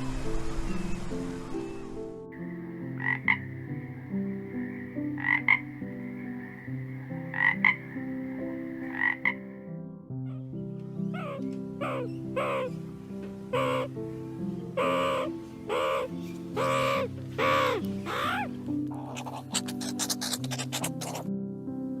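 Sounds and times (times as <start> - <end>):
background music: 0.0 - 22.0
frog double croaks: 2.4 - 9.7
high-pitched frog call: 2.4 - 9.7, 13.5 - 13.9.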